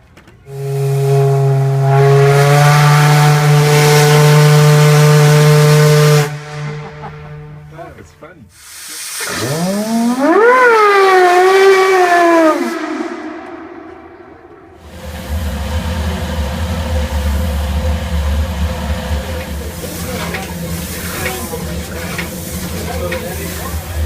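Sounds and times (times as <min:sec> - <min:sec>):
steam whistle blasts: 0:00.5 - 0:07.8, 0:08.6 - 0:24.0
steam hissing: 0:00.5 - 0:10.4, 0:14.8 - 0:24.0.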